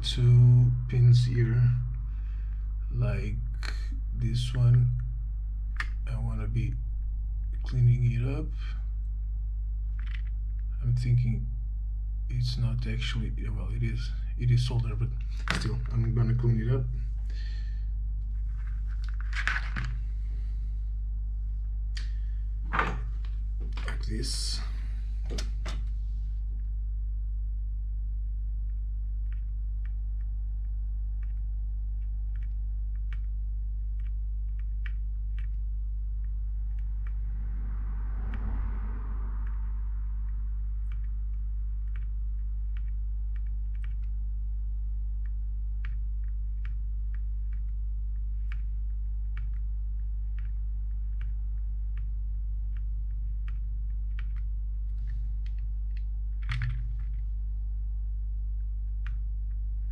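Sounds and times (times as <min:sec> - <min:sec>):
low electrical hum: 0:00.0 - 0:59.9
thin steady tone: 0:36.3 - 0:42.8
small sharp ticks: 0:40.2 - 0:44.2.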